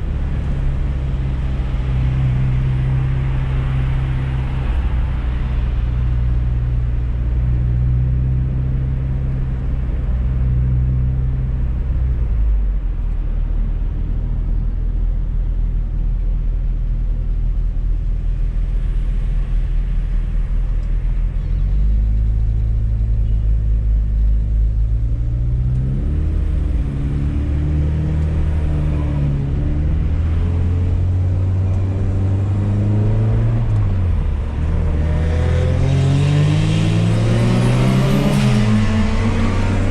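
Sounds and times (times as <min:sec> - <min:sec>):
car engine accelerating: 0:17.1 - 0:39.9.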